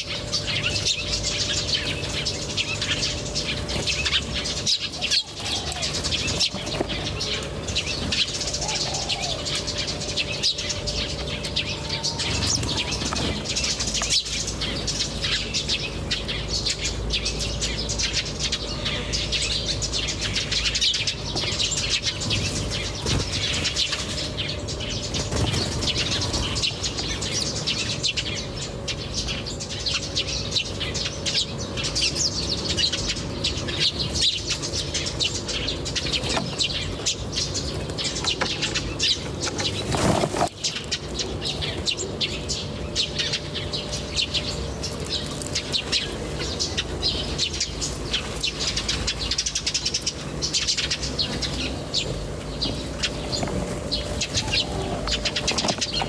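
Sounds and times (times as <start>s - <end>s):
small birds chirping: 0.0s - 56.0s.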